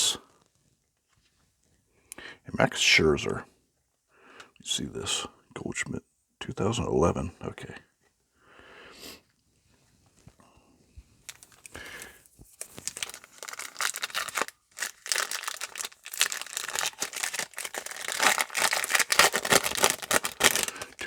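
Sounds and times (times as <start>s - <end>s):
foil wrapper crinkling and tearing: 11.2s - 21.0s.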